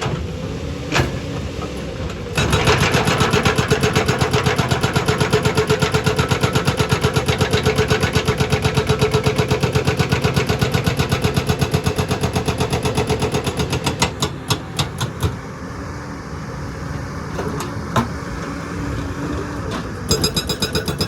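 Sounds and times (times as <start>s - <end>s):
excavator engine running: 0.0s - 21.0s
excavator hammering rock: 2.4s - 15.5s, 20.1s - 21.0s.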